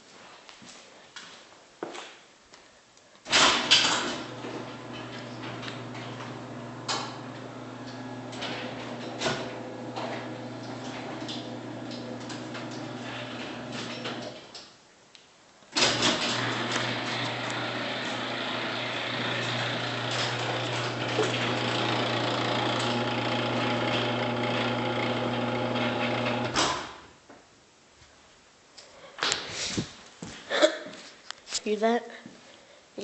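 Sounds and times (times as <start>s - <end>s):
garage door motor hum: 3.3s - 14.6s, 15.7s - 27.1s.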